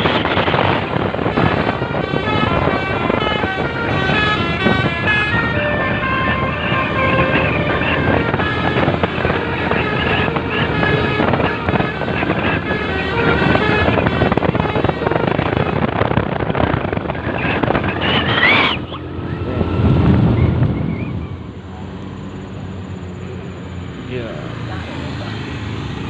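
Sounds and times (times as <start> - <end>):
musical bus horn: 0.0 - 20.0
wind on microphone: 0.0 - 23.5
bus rumble: 0.0 - 26.0.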